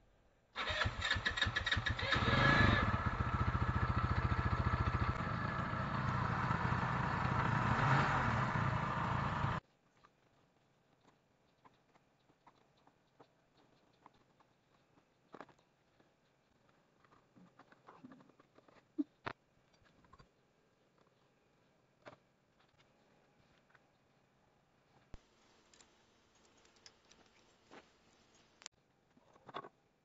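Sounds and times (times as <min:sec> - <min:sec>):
scooter electric starter cranking: 0:00.6 - 0:05.9
scooter engine running loudly: 0:00.9 - 0:09.6.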